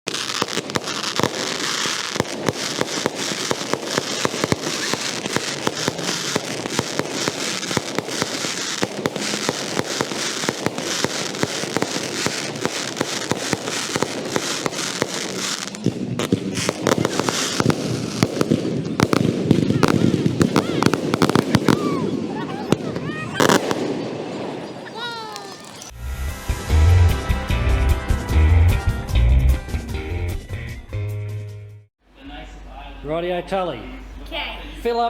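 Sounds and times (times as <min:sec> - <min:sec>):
fireworks crackling and popping: 0:00.1 - 0:26.0
continuous hiss: 0:32.0 - 0:35.0.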